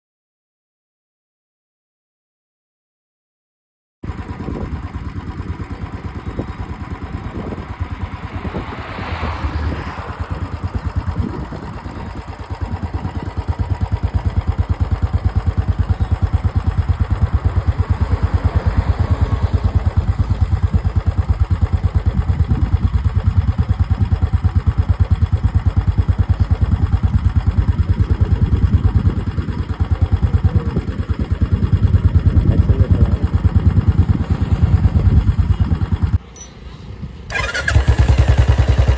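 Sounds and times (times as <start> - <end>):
motorcycle engine idling: 4.0 - 36.7, 37.3 - 38.9.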